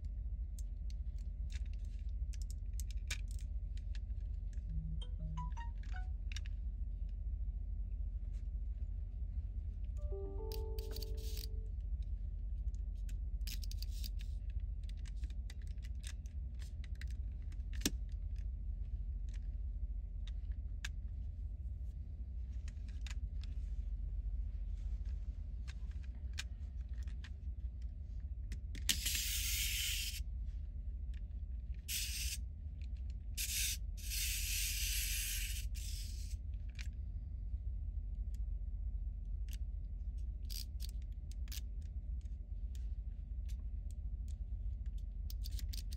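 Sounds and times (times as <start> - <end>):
steady low hum: 0.0 - 45.9
plastic toy parts clicking: 40.5 - 41.6, 45.3 - 45.9.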